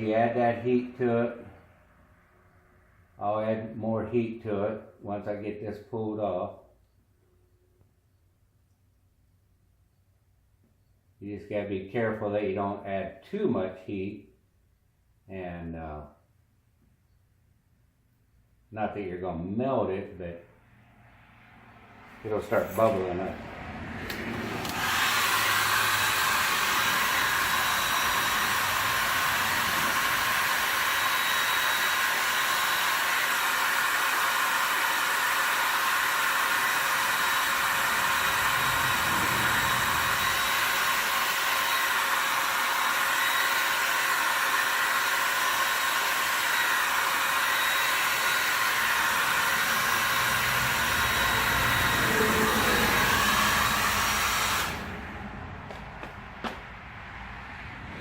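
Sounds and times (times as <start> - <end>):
hot-air blower running: 22.2 - 56.9.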